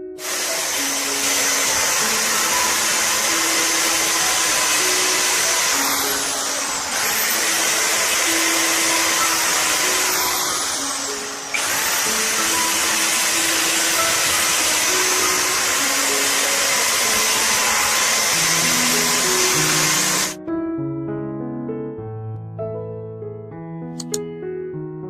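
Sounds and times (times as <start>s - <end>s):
power tool whirring: 0.0s - 20.4s, 24.0s - 24.2s
soft piano music: 0.0s - 25.0s.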